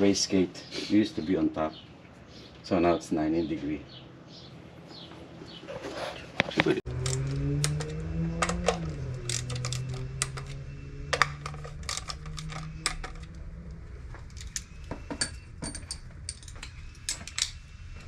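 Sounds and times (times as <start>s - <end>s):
metal tools clinking: 6.9s - 17.6s
low hum: 6.9s - 18.0s.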